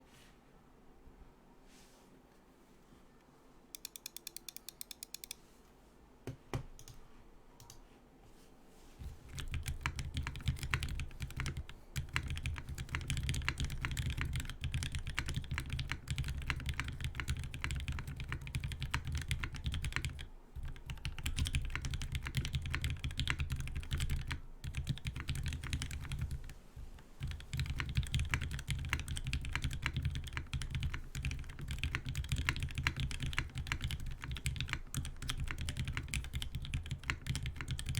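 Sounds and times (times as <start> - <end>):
mechanical keyboard typing: 3.8 - 5.4, 9.3 - 26.6, 27.2 - 37.9.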